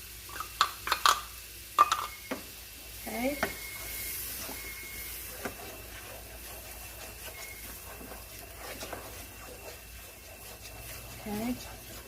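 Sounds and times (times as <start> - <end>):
steady low hum: 2.8 - 12.0
utensil scraping a pan: 3.4 - 12.0.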